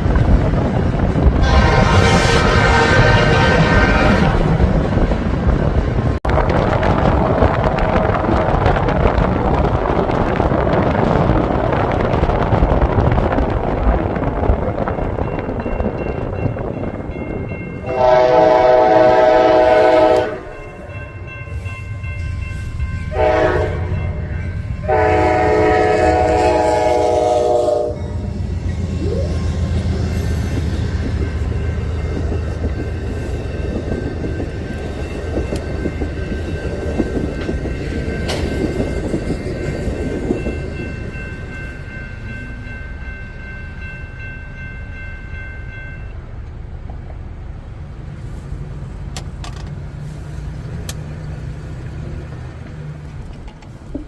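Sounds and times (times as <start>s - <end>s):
train passing with wheel clatter: 0.0s - 54.0s
locomotive horn blasts: 1.4s - 4.4s, 17.8s - 20.6s, 23.1s - 24.2s, 24.8s - 28.2s.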